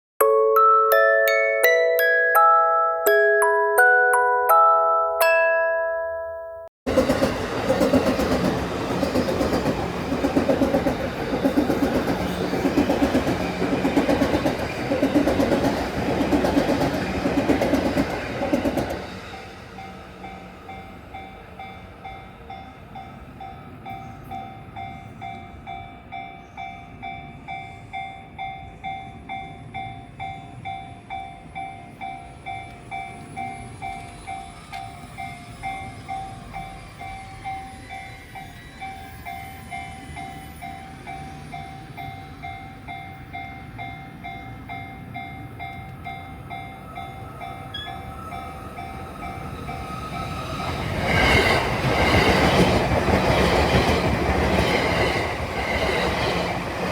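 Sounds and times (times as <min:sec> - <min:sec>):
electric train arriving: 0:00.2 - 0:06.2, 0:06.9 - 0:56.9
level crossing warning bell: 0:00.2 - 0:06.7, 0:19.8 - 0:50.7.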